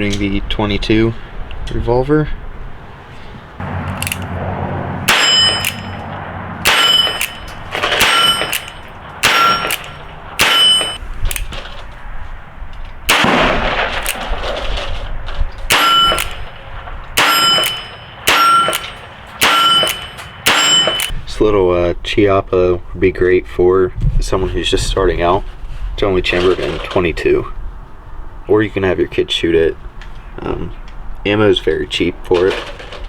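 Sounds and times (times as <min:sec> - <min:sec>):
metallic ring of steel target: 0:03.6 - 0:11.0, 0:15.7 - 0:21.2
revolver gunshots: 0:03.6 - 0:11.5, 0:13.1 - 0:15.0, 0:15.7 - 0:21.1.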